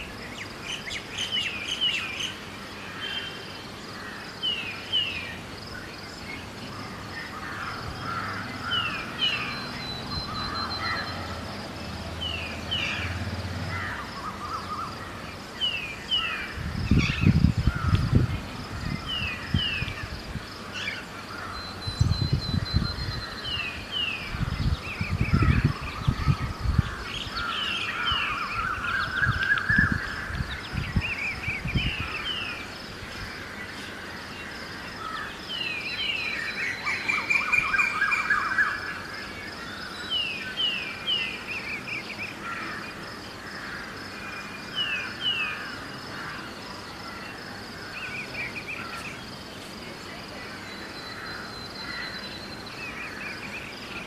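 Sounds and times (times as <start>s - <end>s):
birds chirping: 0.0s - 54.0s
wind buffeting microphone: 16.4s - 20.7s, 21.7s - 33.4s.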